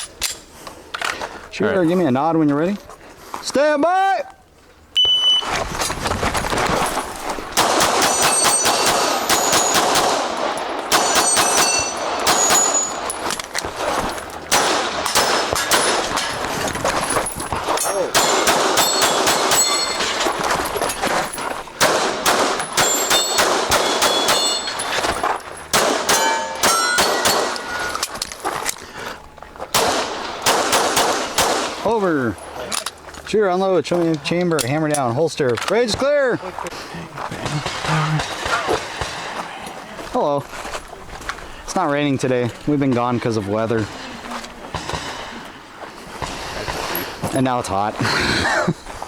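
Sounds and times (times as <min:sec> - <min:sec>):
pistol shots: 0:07.6 - 0:13.3, 0:14.5 - 0:16.4, 0:17.9 - 0:20.2, 0:21.8 - 0:28.0, 0:29.7 - 0:31.9
steel plates ringing: 0:08.0 - 0:13.5, 0:17.1 - 0:21.0, 0:22.5 - 0:28.1.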